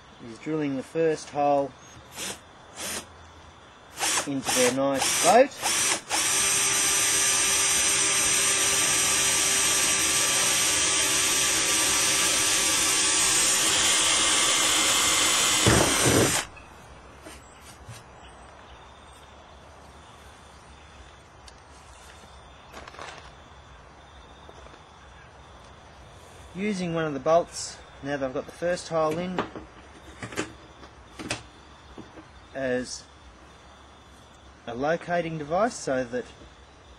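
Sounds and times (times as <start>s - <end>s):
power drill boring: 2.1s - 3.1s, 4.0s - 16.5s.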